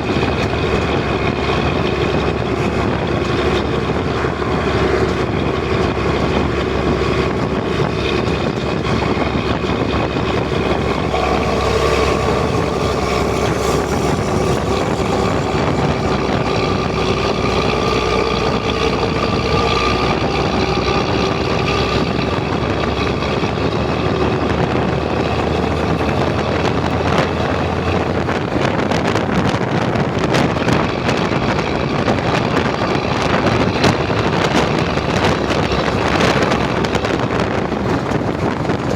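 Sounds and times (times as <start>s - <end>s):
bus diesel engine droning: 0.0s - 38.9s.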